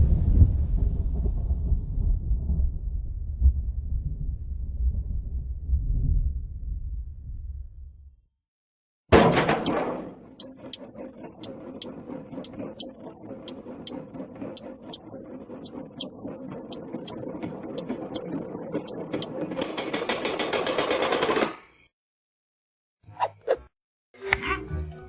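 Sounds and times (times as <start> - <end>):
cartoon machinery rattling and clicking: 9.2 - 21.6.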